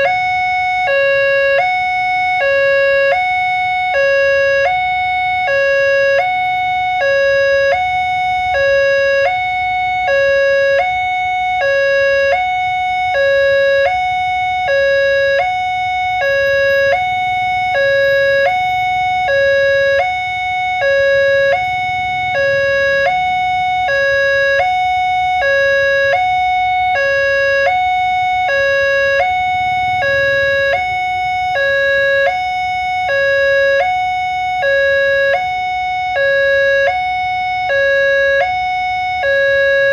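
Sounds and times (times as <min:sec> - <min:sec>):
two-tone warning siren: 0:00.0 - 0:39.9.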